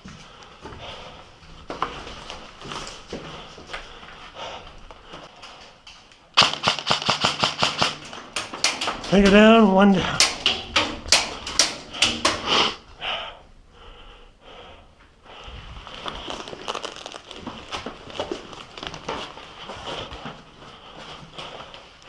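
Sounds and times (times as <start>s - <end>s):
clicks and rustling of gear: 15.9s - 20.3s.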